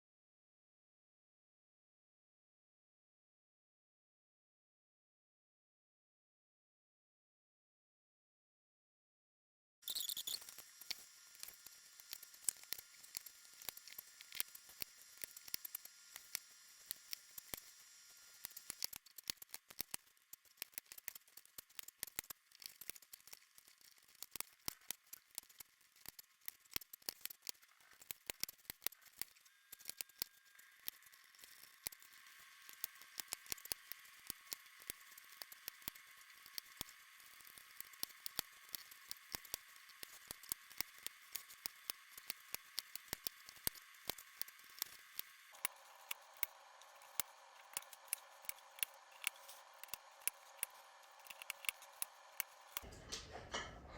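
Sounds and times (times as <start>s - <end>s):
mechanical keyboard keys clicking: 39.1s - 52.9s.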